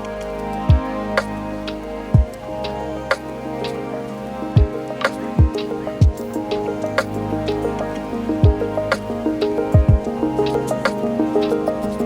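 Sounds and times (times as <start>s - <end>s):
sustained pitched notes: 0.0s - 12.0s
low kick drum thumps: 2.2s - 2.4s, 9.8s - 10.1s.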